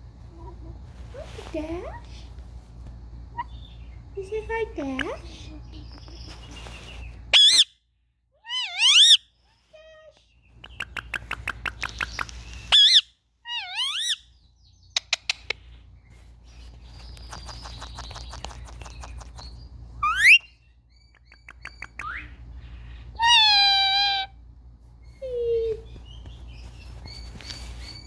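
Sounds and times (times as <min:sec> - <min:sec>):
long loud parakeet call: 0:07.4 - 0:07.7
parakeet quick clicks: 0:10.6 - 0:12.4, 0:17.2 - 0:19.5
parakeets chirping and squawking: 0:12.6 - 0:14.3.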